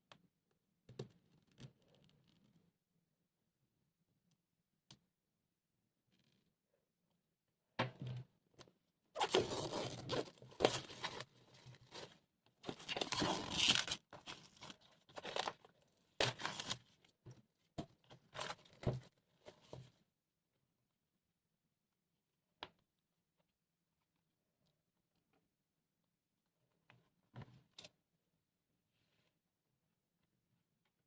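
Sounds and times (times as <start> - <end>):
packaging torn and crinkled: 12.7 - 15.6.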